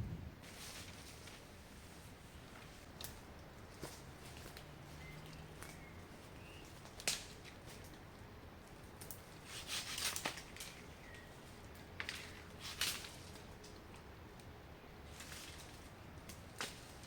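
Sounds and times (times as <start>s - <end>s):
snaps and rustles on forest ground: 0.4s - 17.0s.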